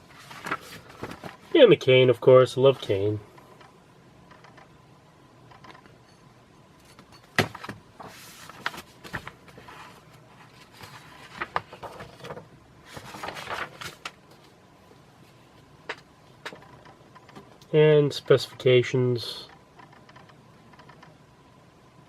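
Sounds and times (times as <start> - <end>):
paper pages rustling: 0.0 - 1.6, 7.5 - 14.6.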